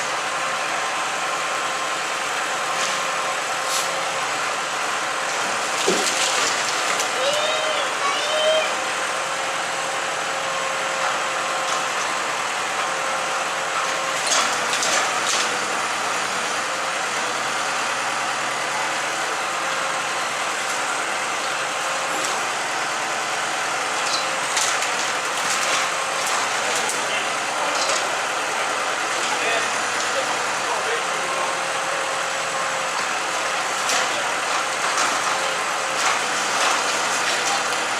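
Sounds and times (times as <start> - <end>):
bonfire roaring: 0.0 - 37.9
fire crackling and popping: 23.9 - 28.4.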